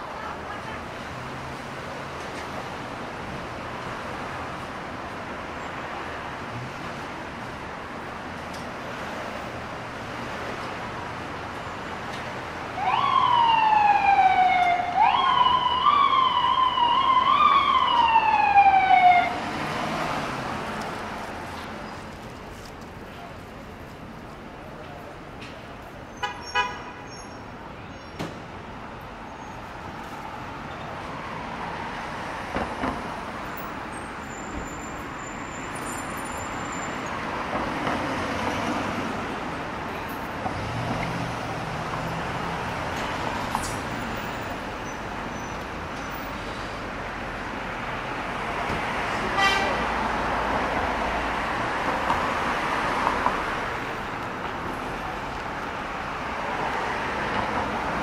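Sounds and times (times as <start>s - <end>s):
street traffic noise: 0.0s - 58.0s
car horn honking: 26.2s - 27.1s, 49.4s - 49.8s.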